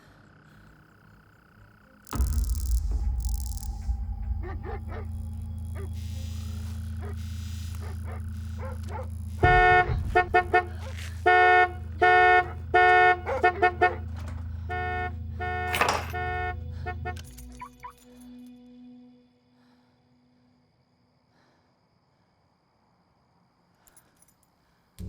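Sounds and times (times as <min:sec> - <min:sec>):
steady low hum: 0:00.0 - 0:17.6
rushing burst of noise: 0:02.1 - 0:11.2
morse code buzzy tone: 0:04.4 - 0:17.7.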